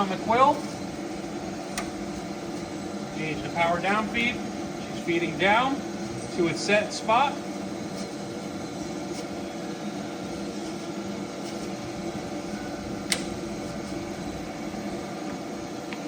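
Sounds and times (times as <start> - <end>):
milling machine humming: 0.0 - 16.0
sharp click of power feed: 13.1 - 13.4.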